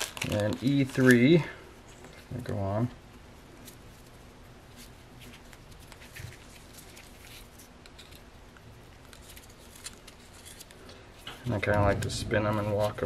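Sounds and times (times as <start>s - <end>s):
small parts clicking and rubbing: 5.2s - 8.3s.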